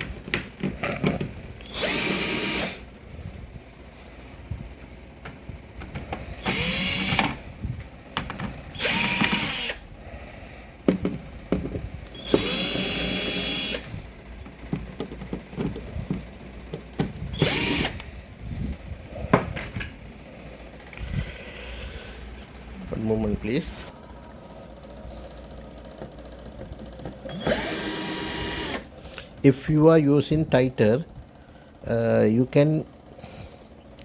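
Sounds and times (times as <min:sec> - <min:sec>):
electric screwdriver motor whining: 0:01.6 - 0:02.8, 0:06.3 - 0:07.4, 0:08.7 - 0:09.9, 0:12.1 - 0:14.0, 0:17.3 - 0:18.1, 0:27.3 - 0:28.9.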